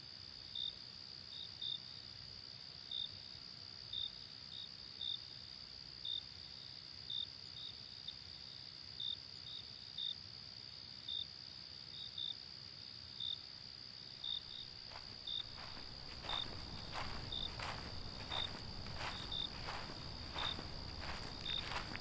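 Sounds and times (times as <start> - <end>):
crickets chirping: 0.4 - 22.0
faint rustling: 14.8 - 22.0.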